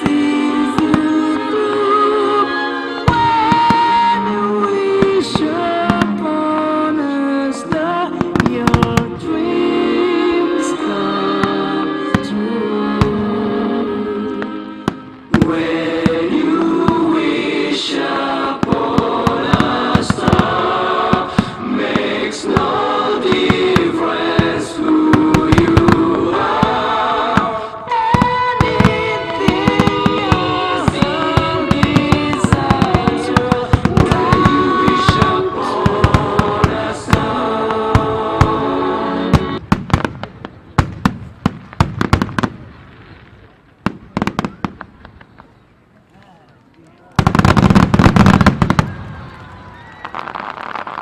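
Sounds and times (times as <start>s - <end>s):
choral music over loudspeakers: 0.0s - 39.7s
firework bursts and crackles: 7.7s - 9.2s, 14.8s - 17.4s, 18.5s - 38.7s, 39.3s - 45.6s, 46.6s - 51.0s.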